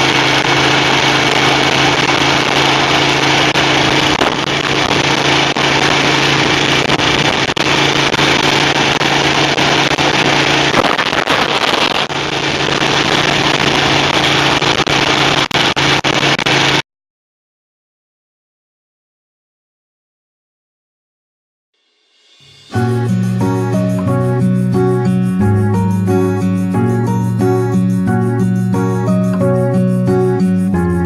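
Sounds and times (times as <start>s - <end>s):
motorcycle engine running: 0.0s - 16.8s, 22.4s - 31.0s
wind noise: 1.3s - 15.4s.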